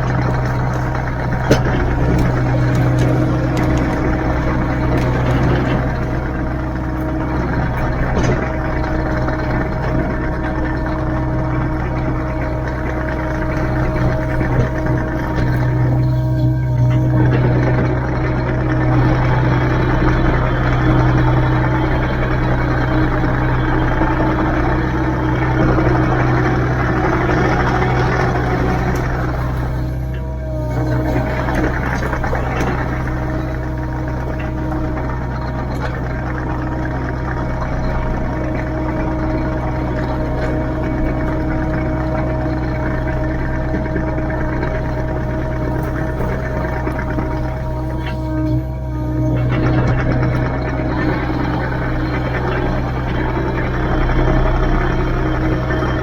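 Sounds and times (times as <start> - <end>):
faint knocks: 0.0 - 53.7
excavator diesel engine running: 0.0 - 56.0.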